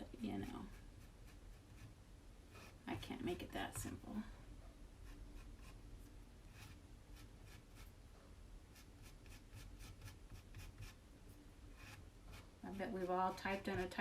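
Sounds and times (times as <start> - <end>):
scratchy paste scraping on screen: 6.5 - 8.0, 11.8 - 14.0.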